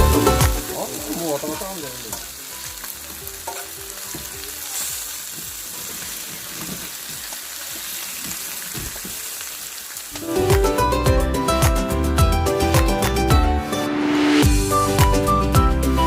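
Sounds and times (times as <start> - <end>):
music: 0.0 - 6.9, 10.1 - 16.0
meat sizzling on a griddle: 0.0 - 10.7.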